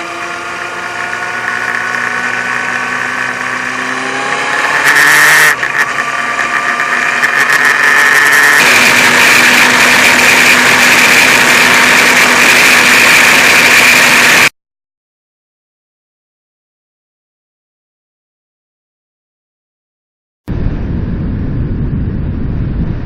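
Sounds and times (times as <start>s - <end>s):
motorcycle engine drone: 0.0s - 14.5s, 20.5s - 23.0s
rushing noise: 1.0s - 14.5s, 20.5s - 23.0s.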